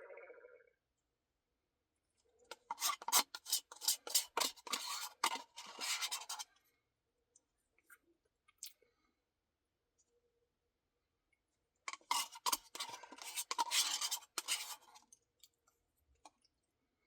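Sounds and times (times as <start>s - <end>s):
crunching and scraping ice cream: 2.5s - 6.6s, 11.9s - 15.2s.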